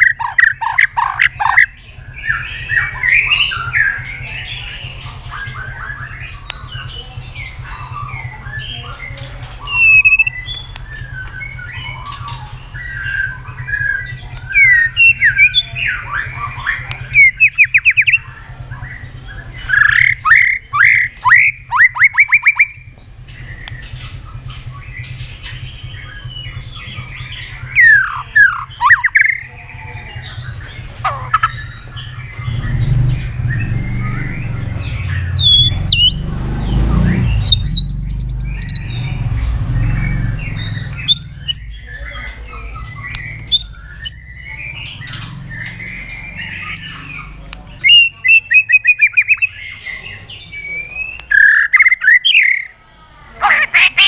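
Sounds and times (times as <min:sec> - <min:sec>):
bird singing loudly: 0:00.0 - 0:54.0
low rumble: 0:22.8 - 0:47.5.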